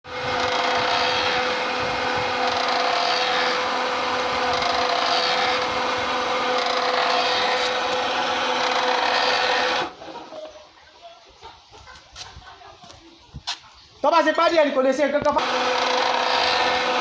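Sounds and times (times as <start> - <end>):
machine hum: 0.1 - 10.0, 15.4 - 17.0.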